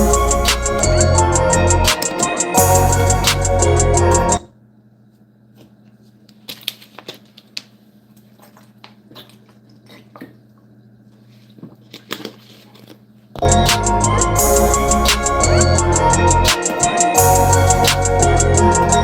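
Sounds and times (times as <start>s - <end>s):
trap beat with deep bass: 0.0s - 4.4s, 13.4s - 19.0s.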